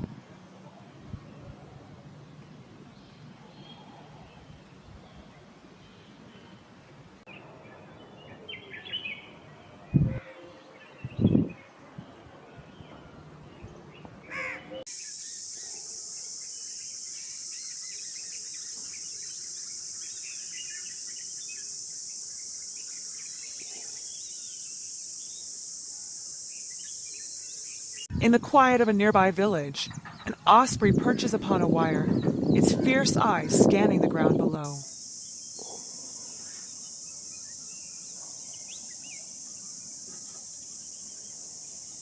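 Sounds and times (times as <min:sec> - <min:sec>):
high-pitched insect drone: 0:14.9 - 0:18.6, 0:19.4 - 0:28.1, 0:34.7 - 0:42.0
bird calls: 0:34.8 - 0:42.0.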